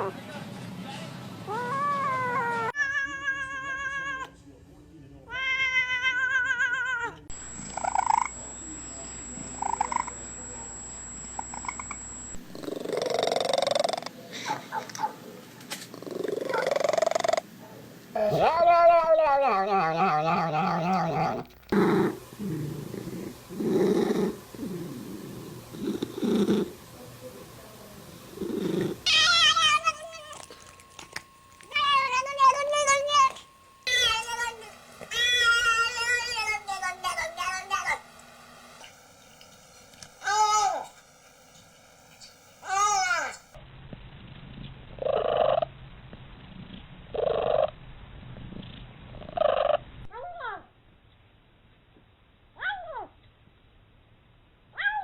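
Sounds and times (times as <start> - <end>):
cat meowing: 1.5 - 4.3, 5.3 - 7.3, 29.1 - 30.6
low rumbling purr: 11.1 - 14.2, 15.9 - 17.5, 20.3 - 26.9, 28.2 - 29.1, 43.8 - 50.1
cat purring: 12.6 - 14.9, 15.7 - 17.5, 19.6 - 43.4, 46.4 - 49.8.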